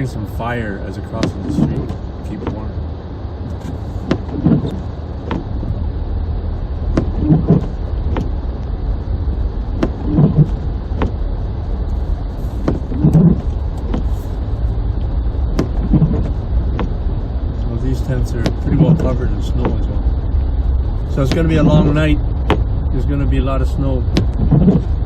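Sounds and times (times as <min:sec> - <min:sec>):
car road and engine rumble: 0:00.0 - 0:25.0
soft double thump: 0:06.9 - 0:08.4, 0:15.5 - 0:17.0.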